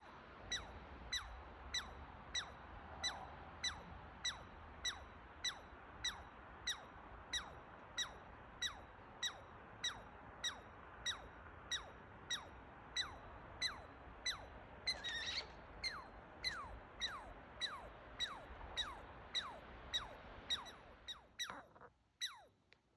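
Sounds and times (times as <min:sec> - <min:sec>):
chipmunk chipping: 0:00.5 - 0:22.4
wavering call: 0:14.9 - 0:19.5.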